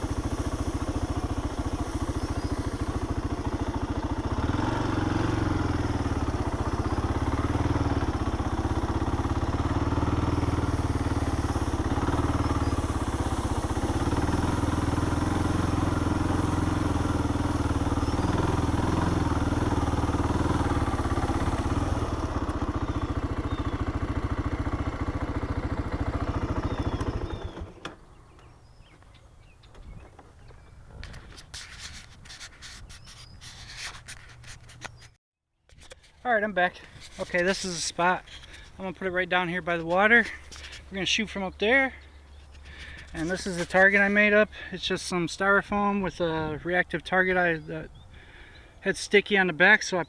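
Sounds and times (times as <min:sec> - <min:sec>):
atv engine running: 0:00.0 - 0:35.2, 0:36.2 - 0:50.0.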